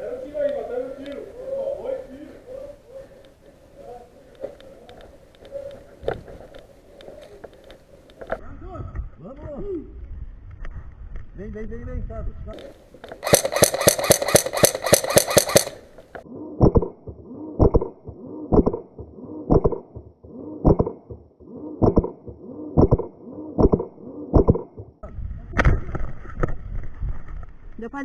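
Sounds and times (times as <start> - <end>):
airsoft guns firing: 13.2 - 16.0.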